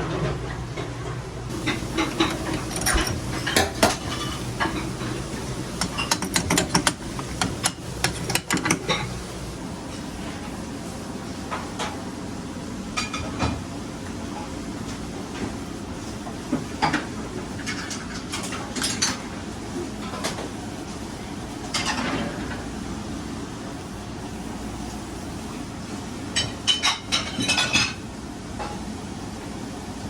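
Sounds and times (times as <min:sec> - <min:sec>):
low mechanical hum: 0:00.0 - 0:30.0
metal clinking and clattering: 0:01.5 - 0:09.4.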